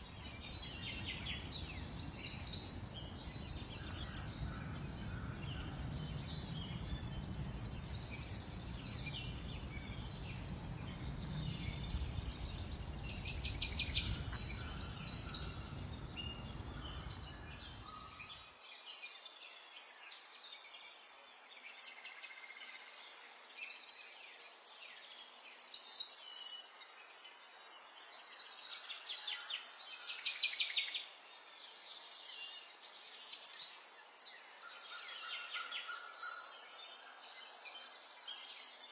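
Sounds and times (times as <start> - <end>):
songbirds chirping and trilling: 0.0 - 18.2
low background rumble: 0.1 - 18.0.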